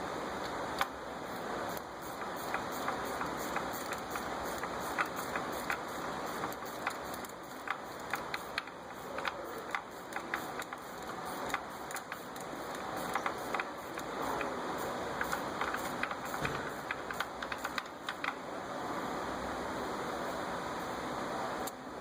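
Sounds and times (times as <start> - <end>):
ratchet clicking: 1.7 - 18.4.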